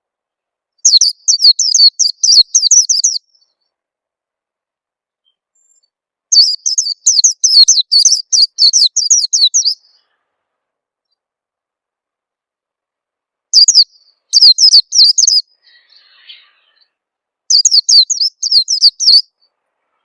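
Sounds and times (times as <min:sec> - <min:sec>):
high twittering birdsong: 0:00.8 - 0:03.8, 0:05.2 - 0:10.4, 0:13.5 - 0:20.0.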